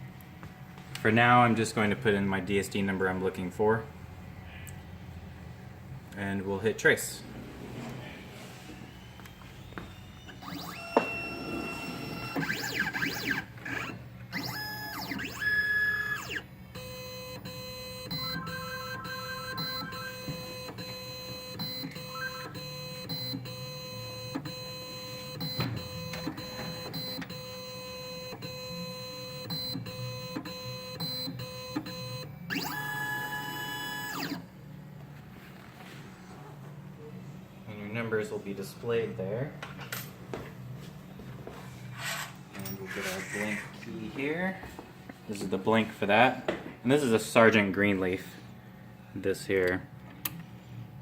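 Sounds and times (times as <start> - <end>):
key machine motor whining: 7.2 - 34.5.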